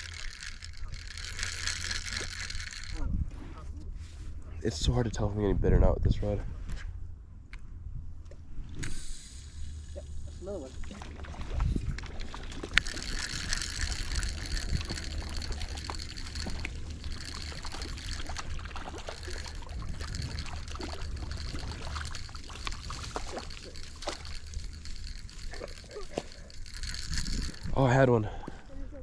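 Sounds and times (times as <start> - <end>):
wind rumble on microphone: 2.8 - 29.0
water trickling and lapping: 8.6 - 29.0.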